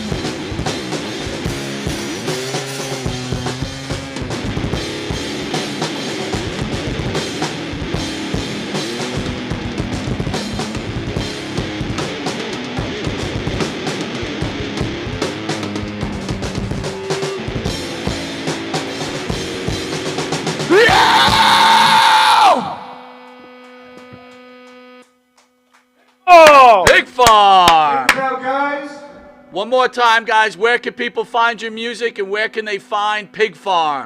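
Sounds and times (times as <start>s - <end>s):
drum kit beat: 0.0s - 21.8s
rock band playing: 0.0s - 22.9s.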